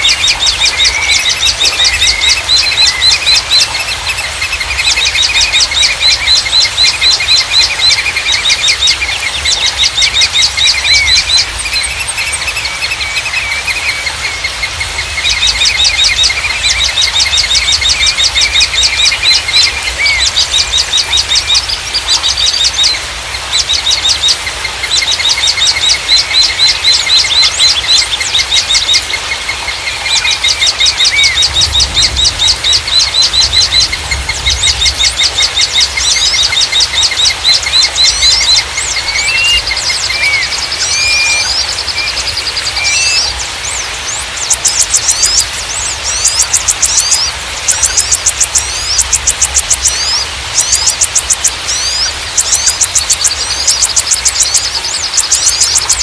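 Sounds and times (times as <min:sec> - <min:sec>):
songbirds trilling: 0:00.0 - 0:56.0.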